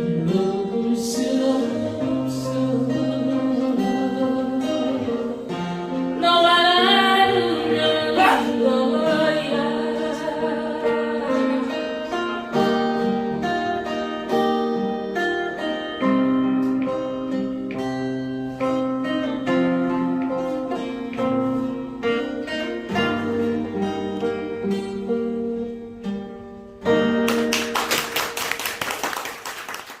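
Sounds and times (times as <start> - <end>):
person singing: 0.0 - 13.6, 22.8 - 25.1
acoustic guitar: 0.0 - 30.0
clapping and applause: 27.2 - 30.0.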